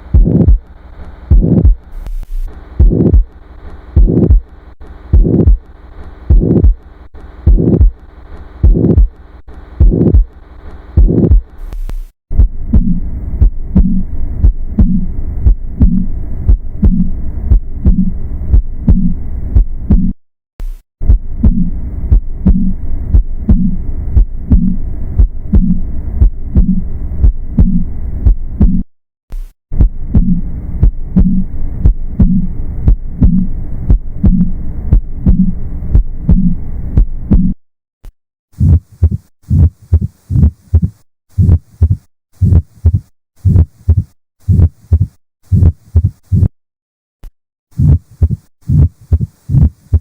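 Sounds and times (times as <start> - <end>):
whooshing heart murmur: 0.0 - 0.7, 1.3 - 3.3, 4.0 - 4.5, 5.1 - 5.7, 6.3 - 6.8, 7.5 - 8.0, 8.6 - 9.1, 9.8 - 10.3, 11.0 - 11.5, 12.3 - 20.2, 21.0 - 28.8, 29.8 - 37.6, 38.6 - 46.5, 47.8 - 50.0
heartbeat: 0.0 - 5.7, 6.3 - 9.2, 9.8 - 37.6, 38.6 - 46.6, 47.7 - 50.0.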